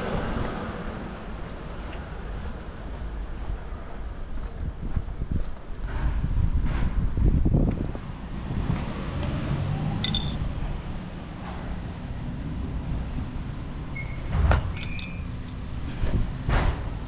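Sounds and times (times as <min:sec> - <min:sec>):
light metallic clinks: 0:10.0 - 0:10.5, 0:14.7 - 0:15.6.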